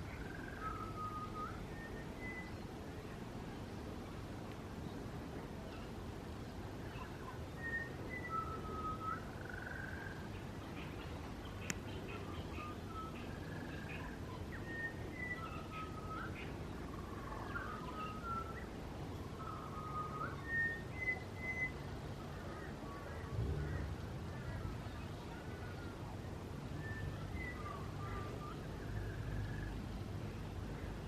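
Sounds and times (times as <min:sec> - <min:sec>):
birds singing: 0:00.0 - 0:03.9, 0:06.8 - 0:31.0
steady low rumble: 0:22.8 - 0:27.2.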